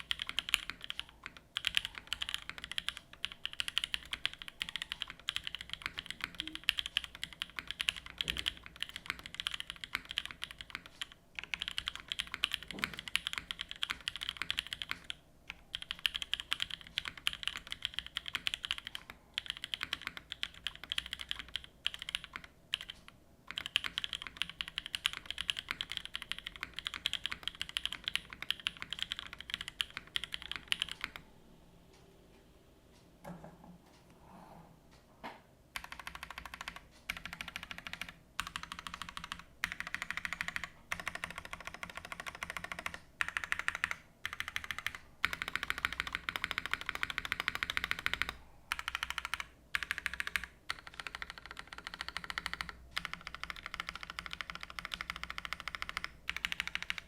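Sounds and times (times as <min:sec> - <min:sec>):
mechanical keyboard typing: 0:00.0 - 0:31.3, 0:35.7 - 0:57.0.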